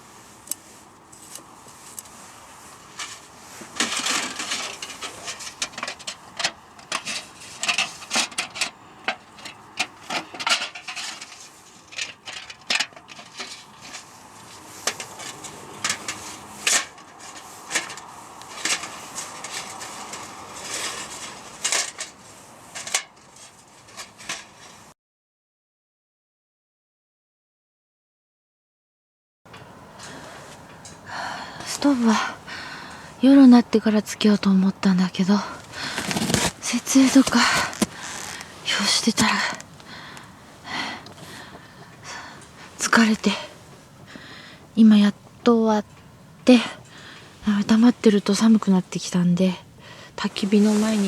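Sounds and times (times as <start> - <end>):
objects knocking and clattering: 3.0 - 14.1
rubbing: 35.4 - 43.7, 50.2 - 51.0.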